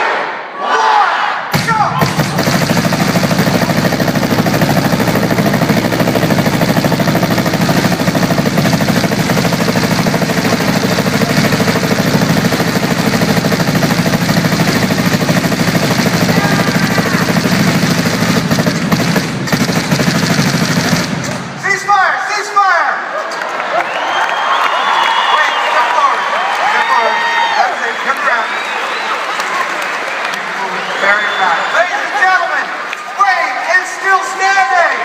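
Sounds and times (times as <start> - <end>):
paintball gun rapid firing: 1.5 - 21.6.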